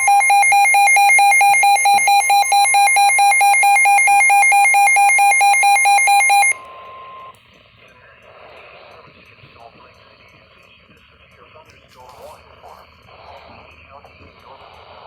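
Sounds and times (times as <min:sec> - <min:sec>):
pulsing alarm beeps: 0:00.0 - 0:07.3
steady high alarm tone: 0:00.0 - 0:07.3.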